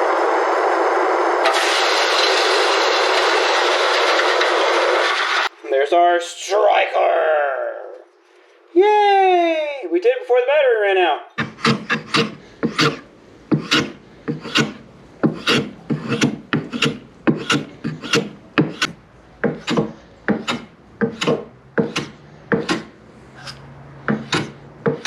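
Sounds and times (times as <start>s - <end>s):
hand filing strokes: 11.4s - 25.0s.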